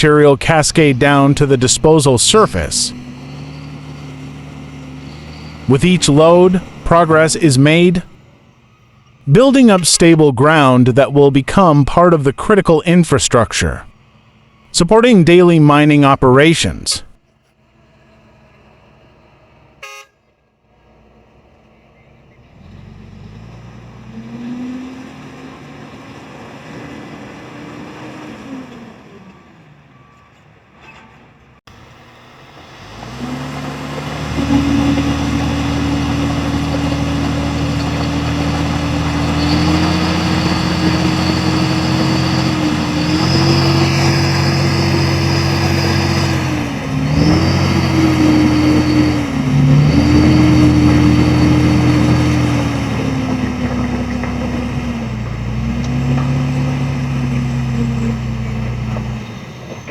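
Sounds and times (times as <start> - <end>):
diesel truck engine revving: 0.0 - 20.0, 20.6 - 59.9.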